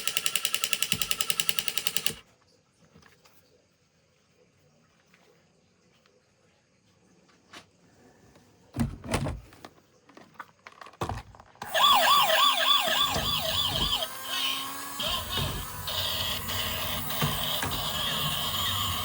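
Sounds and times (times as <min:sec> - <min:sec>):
toy siren warbling: 0:11.6 - 0:19.0.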